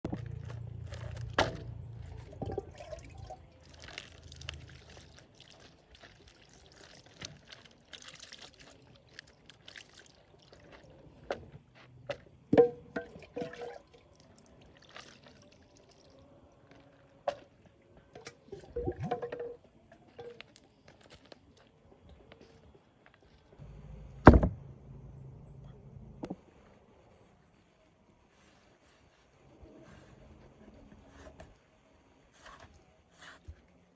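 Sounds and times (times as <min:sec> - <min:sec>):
liquid being poured: 0:00.1 - 0:11.0.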